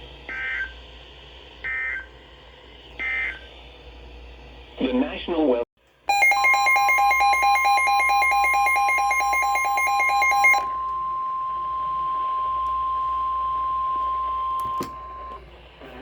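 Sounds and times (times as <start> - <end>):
fast two-pitch alert warble: 6.1 - 10.7
steady alarm tone: 6.1 - 15.4.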